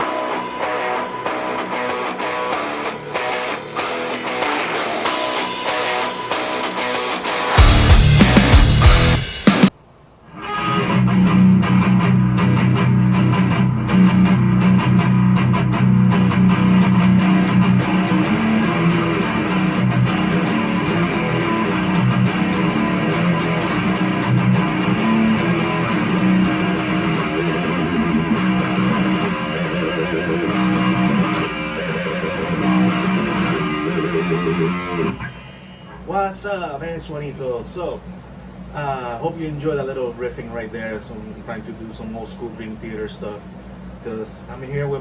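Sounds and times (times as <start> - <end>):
electric guitar playing metal riffs: 0.0 - 9.7, 10.3 - 36.2.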